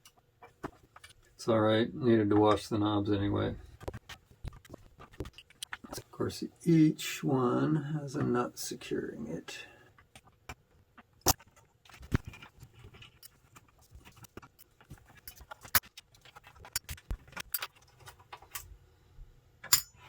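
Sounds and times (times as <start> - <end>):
small metallic clicks and clinks: 19.6 - 20.0.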